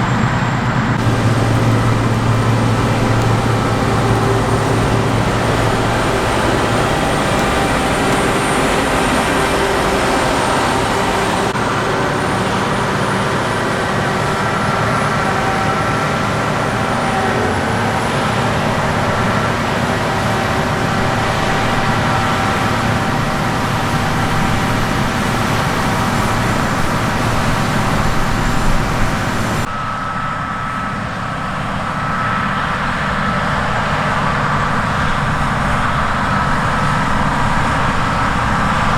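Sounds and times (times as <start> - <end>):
diesel engine din: 0.0 - 38.9
high steady hydraulic whines: 0.0 - 38.9.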